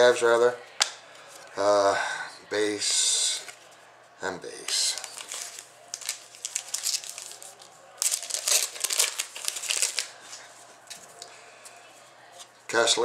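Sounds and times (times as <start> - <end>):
foil wrapper crinkling and tearing: 4.7 - 10.2.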